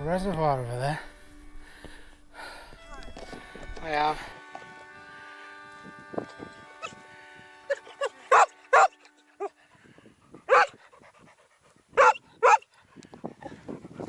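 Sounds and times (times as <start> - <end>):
dog barking: 8.0 - 9.6, 10.5 - 10.8, 12.0 - 12.7.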